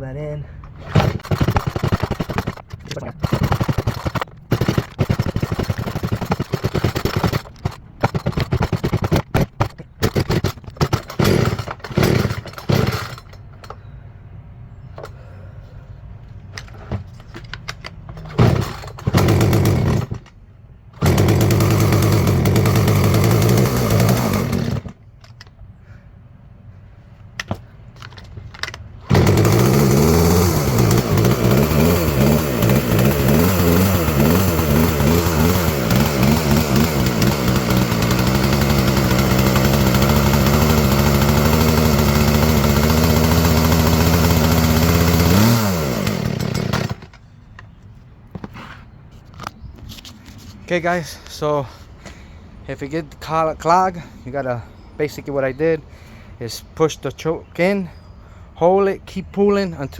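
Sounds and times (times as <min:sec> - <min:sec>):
chainsaw pull-start cord: 0:00.6 - 0:13.8, 0:16.5 - 0:20.4, 0:21.0 - 0:25.5, 0:27.4 - 0:47.2
chainsaw engine running: 0:00.9 - 0:13.4, 0:18.2 - 0:20.3, 0:21.0 - 0:25.0, 0:29.1 - 0:47.1.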